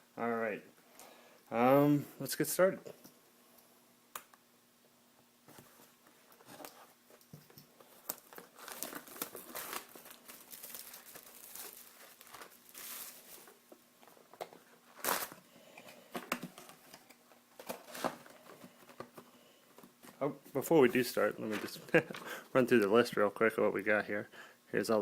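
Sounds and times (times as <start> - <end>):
plastic shrink-wrap crinkling: 7.8 - 13.8, 14.9 - 15.4.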